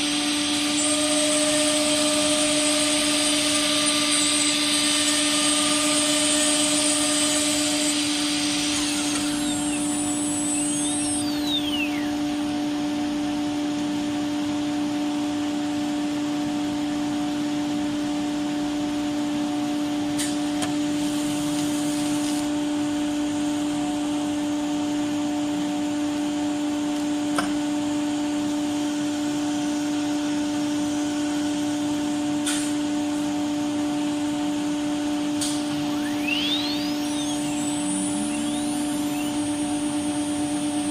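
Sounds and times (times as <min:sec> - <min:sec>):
machine hiss: 0:00.0 - 0:12.5, 0:35.0 - 0:40.9
router machine hum: 0:00.0 - 0:14.6, 0:34.5 - 0:40.9.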